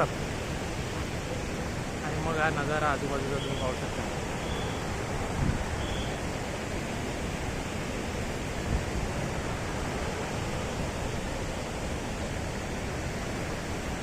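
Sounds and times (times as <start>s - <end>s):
stream rushing: 0.0s - 14.0s
wind rumbling on microphone: 0.0s - 14.0s.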